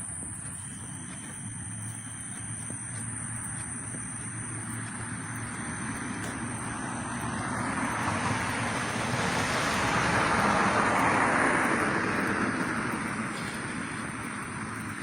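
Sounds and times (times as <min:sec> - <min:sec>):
car passing by: 0:04.2 - 0:15.0.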